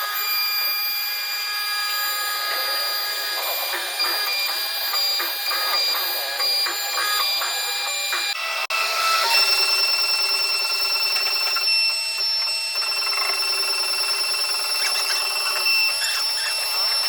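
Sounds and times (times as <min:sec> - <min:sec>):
router spindle cutting wood: 0:00.0 - 0:09.5.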